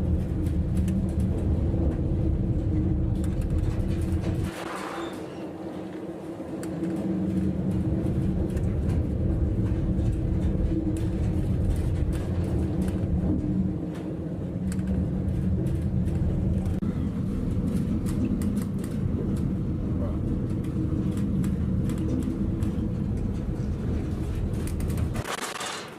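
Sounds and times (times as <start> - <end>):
light rattles and clicks: 0.0 - 4.5
ship engine rumble and hum: 0.0 - 25.3.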